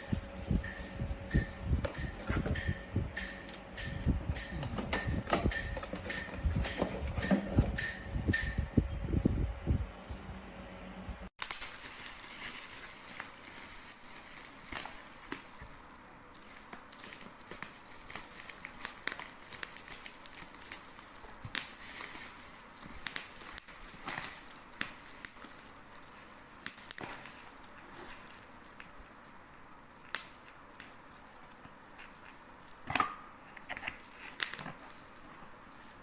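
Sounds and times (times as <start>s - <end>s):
crinkling and rustling handling: 11.4s - 36.0s.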